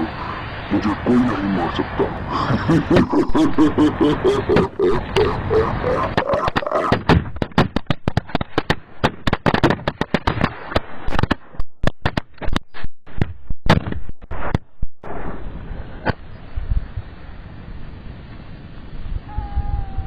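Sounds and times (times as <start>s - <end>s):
firecrackers bangs and pops: 6.9s - 12.4s.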